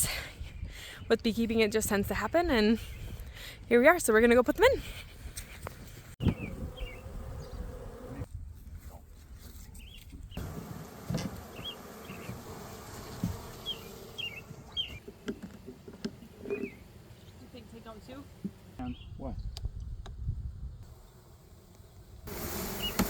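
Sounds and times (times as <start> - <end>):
honeybees buzzing: 6.2 - 8.3, 10.4 - 15.1, 20.8 - 23.0.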